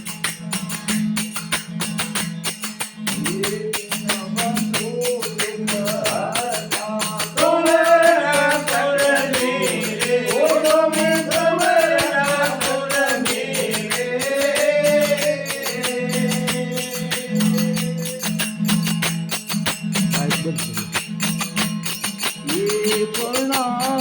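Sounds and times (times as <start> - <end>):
jingling hand percussion: 0.0 - 24.0
person singing devotional song: 3.1 - 19.0, 22.2 - 24.0.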